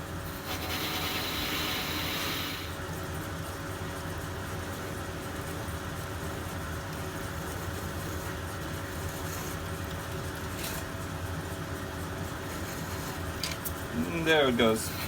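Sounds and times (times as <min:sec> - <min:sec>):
metal lathe running: 0:00.0 - 0:02.8, 0:07.0 - 0:15.0.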